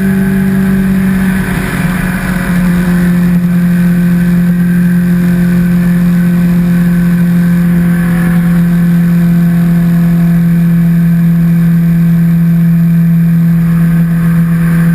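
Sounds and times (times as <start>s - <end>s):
motorcycle engine running: 0.0s - 14.9s
wind and road noise: 0.0s - 14.9s.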